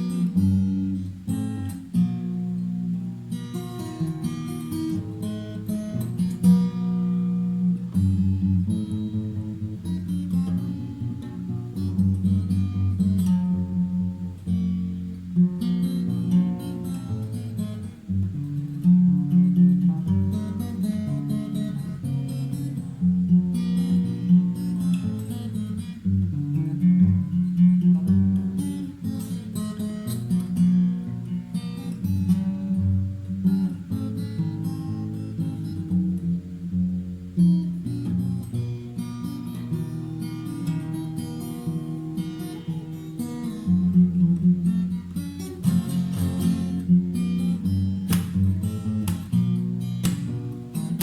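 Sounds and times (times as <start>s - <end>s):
acoustic guitar playing: 0.0s - 51.0s.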